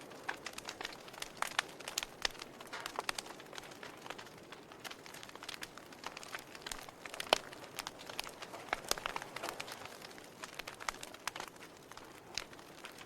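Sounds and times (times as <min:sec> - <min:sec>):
wood fire crackling and popping: 0:00.0 - 0:13.0.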